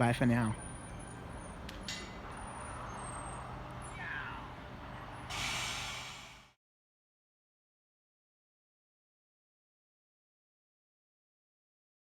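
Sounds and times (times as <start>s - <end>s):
train humming: 0.9s - 6.6s
air brakes hissing: 5.3s - 6.6s.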